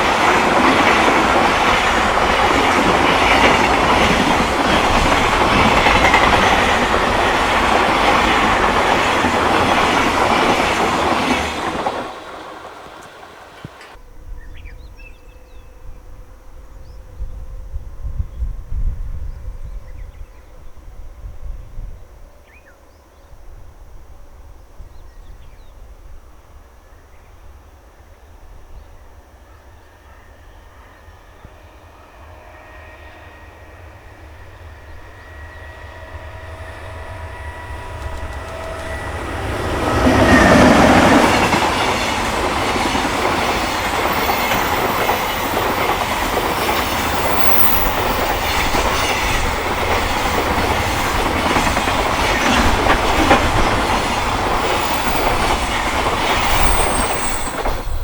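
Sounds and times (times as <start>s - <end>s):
train wheel clatter: 0.0s - 14.0s, 34.8s - 58.0s
electric locomotive passing: 0.0s - 22.7s, 25.4s - 58.0s.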